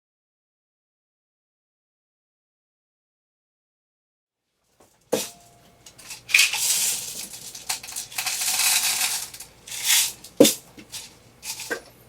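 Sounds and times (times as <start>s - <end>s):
beads rattling in plastic bottles: 5.9s - 11.9s.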